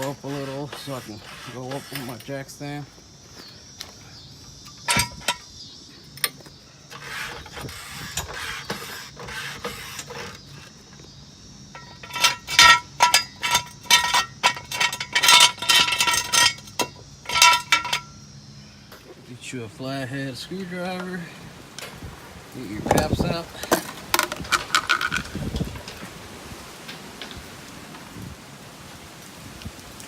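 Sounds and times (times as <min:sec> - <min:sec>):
soft metal scrapes: 0:00.0 - 0:02.8, 0:06.9 - 0:10.8.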